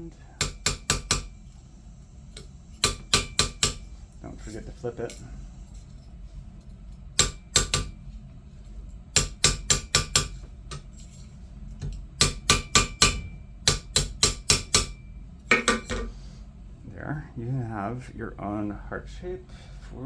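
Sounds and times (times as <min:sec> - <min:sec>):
hammer tapping wire on metal: 0:00.4 - 0:01.4, 0:02.3 - 0:03.9, 0:07.2 - 0:08.0, 0:09.2 - 0:10.9, 0:11.8 - 0:16.1.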